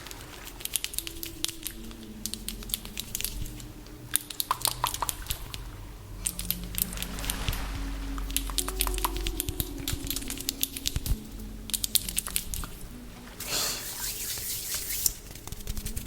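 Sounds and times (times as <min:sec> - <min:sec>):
person humming a slow tune: 0:00.0 - 0:14.2
crackly clicks and taps: 0:00.4 - 0:06.9.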